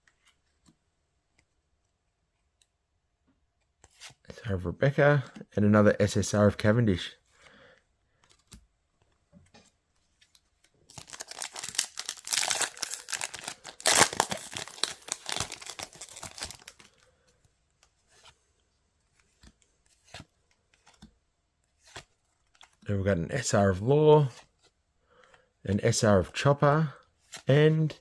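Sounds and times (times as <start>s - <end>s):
wrapper tearing and crinkling: 10.9s - 16.9s.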